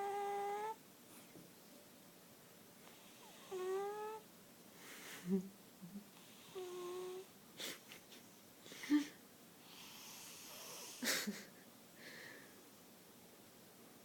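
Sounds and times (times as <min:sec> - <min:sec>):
cat snoring: 0:00.0 - 0:00.8, 0:02.9 - 0:04.2, 0:06.2 - 0:07.3, 0:09.6 - 0:11.0.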